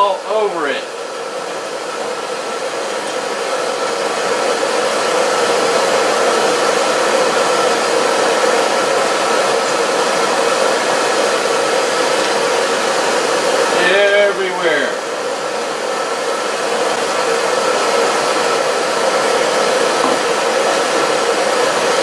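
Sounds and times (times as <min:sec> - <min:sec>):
blower whirring with hum: 0:00.0 - 0:22.0.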